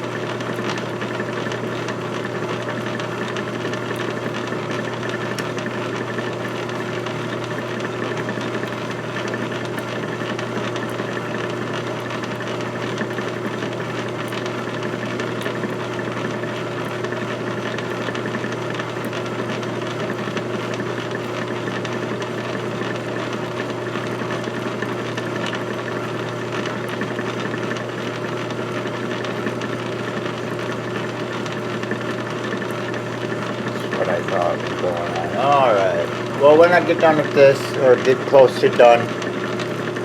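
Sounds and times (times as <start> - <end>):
motor humming: 19.6 - 40.0.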